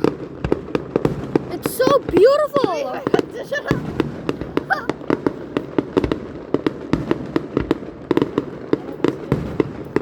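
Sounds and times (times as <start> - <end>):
fireworks popping and banging: 0.0 - 10.0.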